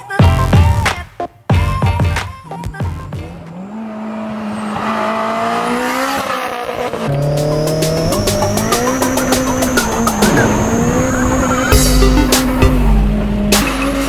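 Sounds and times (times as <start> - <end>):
car engine revving high: 3.4 - 14.0.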